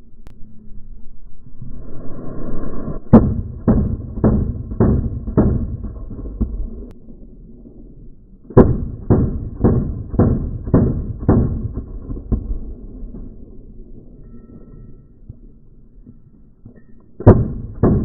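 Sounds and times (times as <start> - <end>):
gunshots with echo: 3.1 - 6.9, 8.5 - 13.5.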